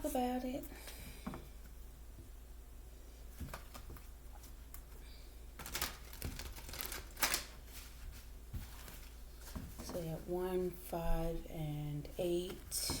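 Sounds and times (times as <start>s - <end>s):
low steady hum: 0.0s - 13.0s
paper rustling: 5.6s - 9.7s.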